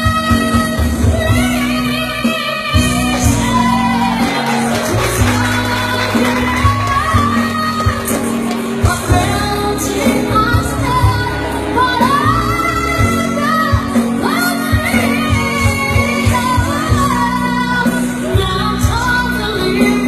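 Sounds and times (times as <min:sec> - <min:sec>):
person singing a pop song: 0:00.0 - 0:20.0
steady drum beat: 0:02.7 - 0:11.2.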